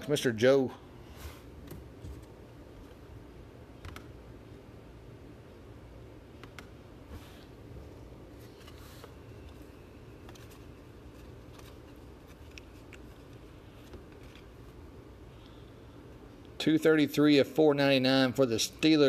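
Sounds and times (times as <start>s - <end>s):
low room hum: 0.0s - 19.0s
trading cards rustling: 8.4s - 14.8s
light clicks of cards and packaging: 10.2s - 14.6s.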